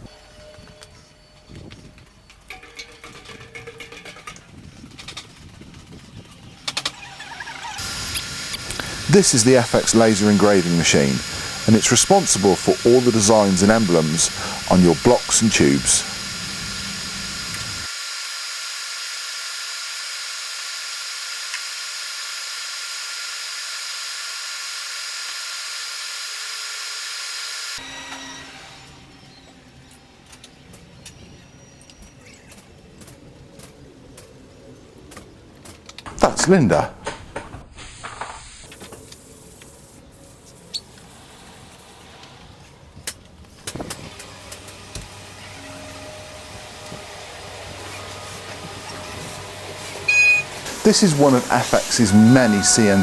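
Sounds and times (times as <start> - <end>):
faint high whines: 7.3 - 20.0, 44.0 - 53.0
laser engraver hiss: 7.8 - 27.8, 47.9 - 53.0.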